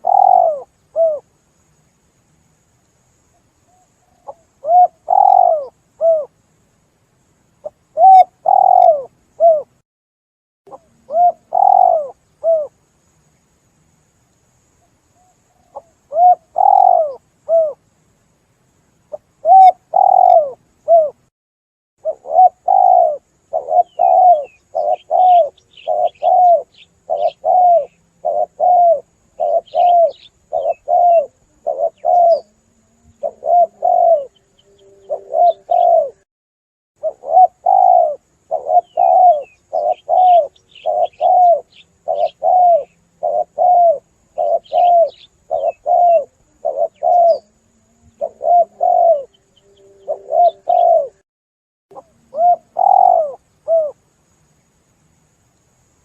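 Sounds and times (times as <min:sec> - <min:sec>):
small birds chirping: 0:00.0 - 0:01.2, 0:03.2 - 0:06.3, 0:07.6 - 0:09.8, 0:10.7 - 0:12.7, 0:14.2 - 0:18.4, 0:19.0 - 0:21.3, 0:22.0 - 0:36.2, 0:37.0 - 0:51.2, 0:51.9 - 0:54.0
dove cooing: 0:00.0 - 0:01.3, 0:04.1 - 0:06.3, 0:07.6 - 0:09.8, 0:10.7 - 0:12.8, 0:15.5 - 0:17.8, 0:19.1 - 0:21.2, 0:22.0 - 0:36.2, 0:37.0 - 0:51.2, 0:51.9 - 0:54.0.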